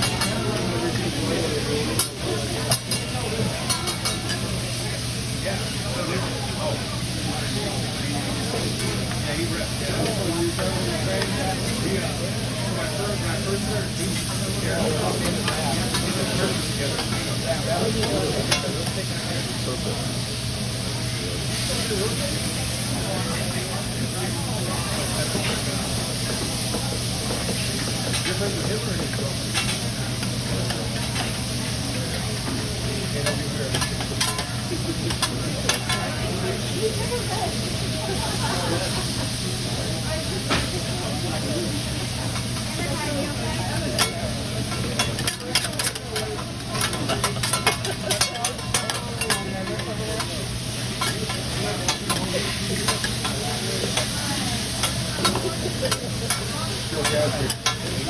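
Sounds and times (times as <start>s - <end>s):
food sizzling on a griddle: 0.0s - 58.0s
metal spatulas striking griddle: 33.2s - 34.5s, 44.0s - 50.3s, 54.8s - 57.9s.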